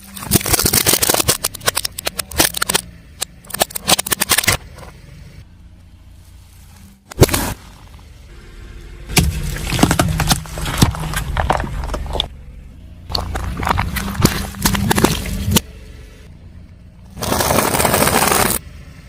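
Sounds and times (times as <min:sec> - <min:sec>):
tyre crushing crunchy objects: 0:00.0 - 0:04.9, 0:07.1 - 0:08.2, 0:09.1 - 0:12.3, 0:13.1 - 0:15.7, 0:17.1 - 0:18.6
car humming: 0:00.0 - 0:19.0.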